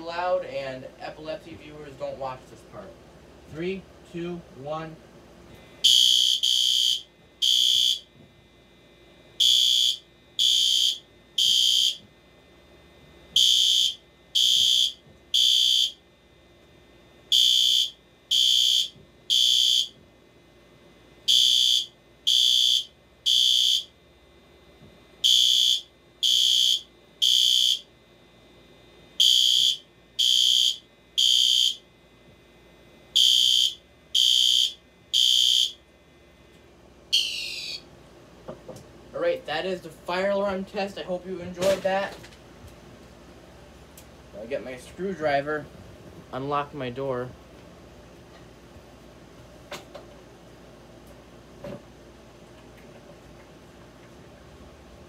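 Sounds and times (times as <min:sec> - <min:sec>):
fire alarm beeping: 0:05.8 - 0:08.2, 0:09.4 - 0:12.1, 0:12.9 - 0:16.1, 0:17.2 - 0:20.0, 0:21.2 - 0:24.0, 0:25.2 - 0:28.0, 0:29.1 - 0:31.9, 0:33.1 - 0:35.9, 0:37.1 - 0:37.9.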